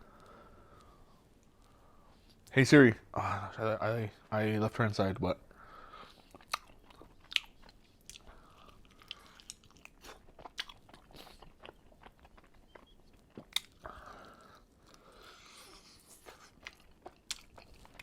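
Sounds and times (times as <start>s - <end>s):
person chewing food: 5.9s - 18.0s.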